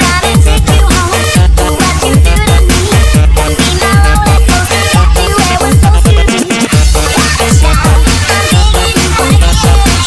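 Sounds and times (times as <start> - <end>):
electronic breakbeat dance music: 0.0 - 10.0.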